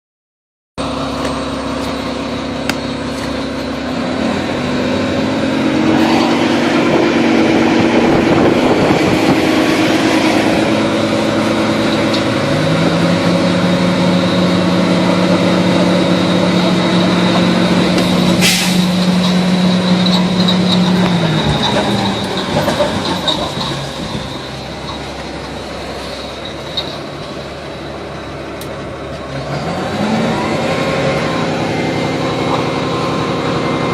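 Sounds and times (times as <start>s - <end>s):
vehicle engine humming: 0.8s - 33.9s
steady rushing noise: 5.4s - 11.0s.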